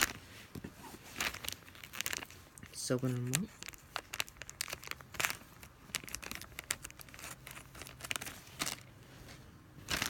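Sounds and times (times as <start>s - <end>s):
plastic wrapper crinkling and tearing: 0.0s - 0.2s, 0.8s - 9.0s.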